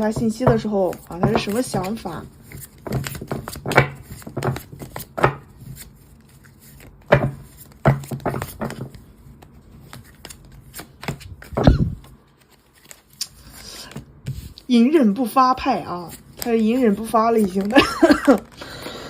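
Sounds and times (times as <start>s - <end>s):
cards tapping and slapping on table: 0.0s - 5.9s, 6.7s - 11.7s, 16.3s - 18.6s
cards rustling: 0.1s - 14.7s, 15.6s - 18.9s.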